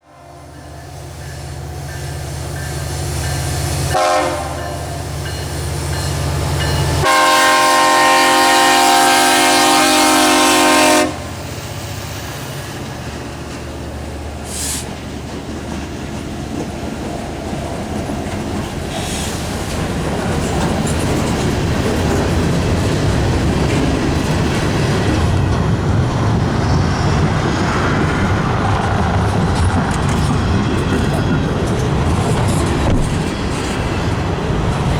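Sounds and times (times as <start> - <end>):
train horn: 0.0 - 0.8, 3.8 - 5.2, 6.9 - 11.5
diesel locomotive engine drone: 0.0 - 34.9
train wheels clacking on rails: 0.5 - 34.9.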